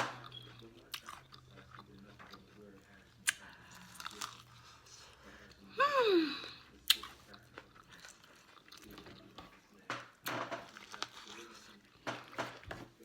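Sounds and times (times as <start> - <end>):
chewing and smacking: 0.2 - 5.6, 6.7 - 9.9, 10.7 - 12.7.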